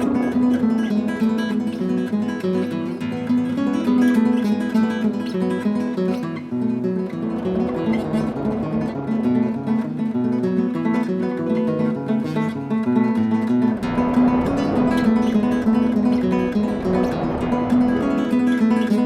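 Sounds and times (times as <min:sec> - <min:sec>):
acoustic guitar music: 0:00.0 - 0:19.0
deep low end: 0:07.2 - 0:10.0, 0:13.5 - 0:19.0.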